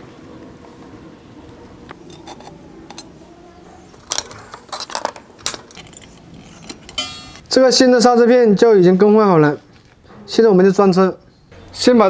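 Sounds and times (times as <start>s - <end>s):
metal parts clinking: 2.1s - 3.1s, 4.0s - 7.5s.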